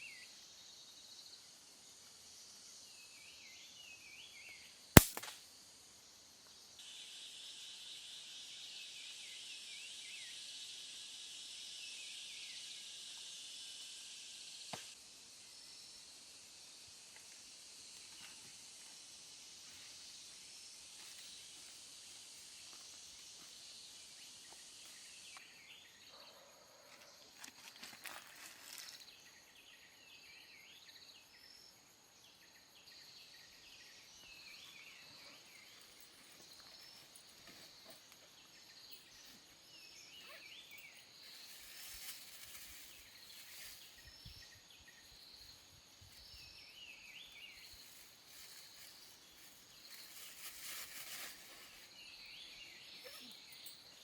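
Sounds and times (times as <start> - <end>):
insects buzzing: 0.0 - 54.0
crackling: 5.0 - 5.4
sharp click: 5.0 - 5.4
bird chirps: 38.9 - 41.5, 51.9 - 54.0.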